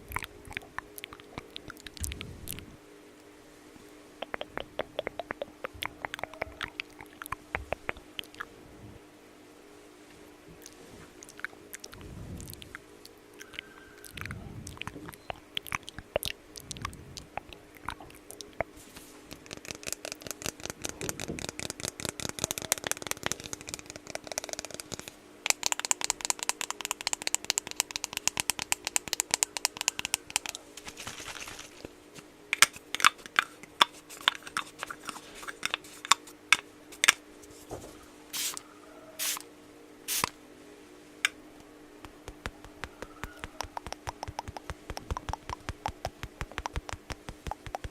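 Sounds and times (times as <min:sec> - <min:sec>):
faint steady hum: 0:00.0 - 0:47.9
tapping on small objects: 0:24.8 - 0:30.6, 0:42.0 - 0:47.9.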